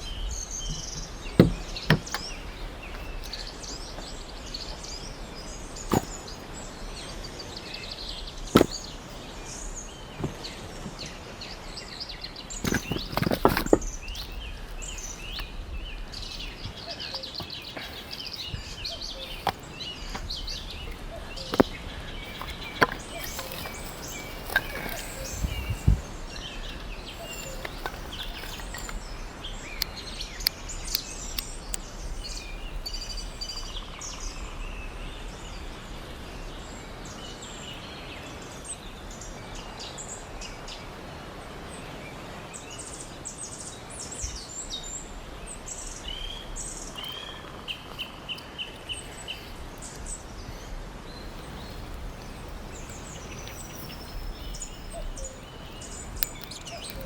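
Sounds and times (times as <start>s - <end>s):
birds chirping and calling: 0.0s - 11.4s, 12.3s - 34.2s, 46.6s - 57.0s
bird trill: 12.6s - 33.6s, 51.3s - 57.0s
sharp clicks: 17.4s - 29.1s, 51.3s - 57.0s.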